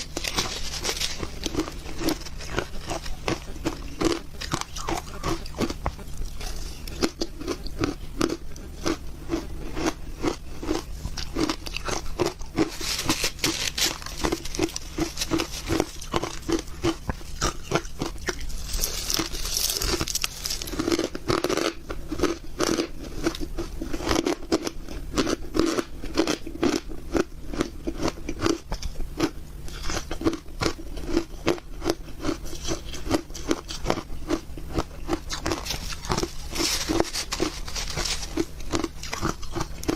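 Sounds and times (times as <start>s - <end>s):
crunching ice being chewed: 0.0s - 39.9s.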